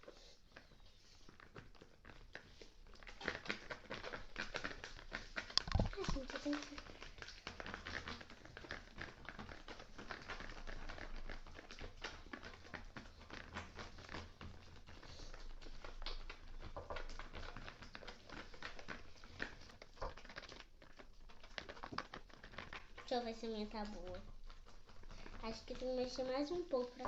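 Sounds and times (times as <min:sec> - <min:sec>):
spoon stirring slime in a bowl: 0:22.2 - 0:27.0.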